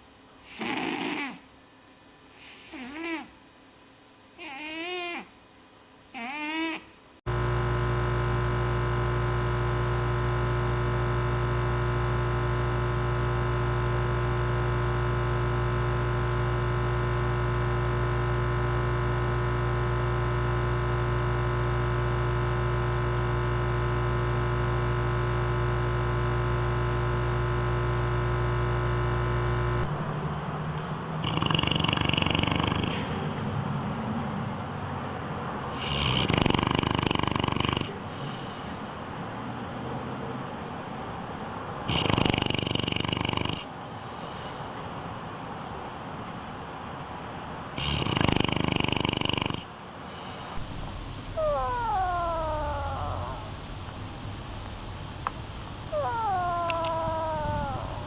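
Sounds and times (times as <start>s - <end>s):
hamster snoring: 0.5s - 1.4s, 2.4s - 3.3s, 8.9s - 10.7s, 11.3s - 29.8s, 31.2s - 33.1s, 35.8s - 38.0s, 41.9s - 43.7s, 47.8s - 49.7s, 51.4s - 53.6s, 55.9s - 58.0s
electronic synthesizer drone: 7.3s - 30.0s, 50.6s - 53.8s
short falling chirp: 9.0s - 10.7s, 12.1s - 13.8s, 15.6s - 17.2s, 18.8s - 20.4s, 22.4s - 24.0s, 26.4s - 28.0s, 51.3s - 53.3s.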